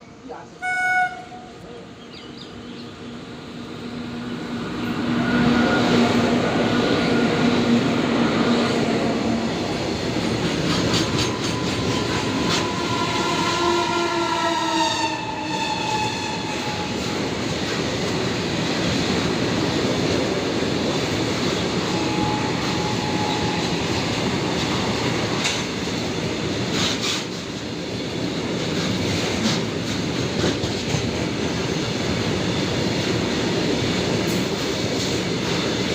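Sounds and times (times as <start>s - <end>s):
train wagons rumbling and clacking: 0.0s - 35.9s
train horn: 0.6s - 1.7s, 5.0s - 6.4s, 11.2s - 17.2s, 21.9s - 23.8s.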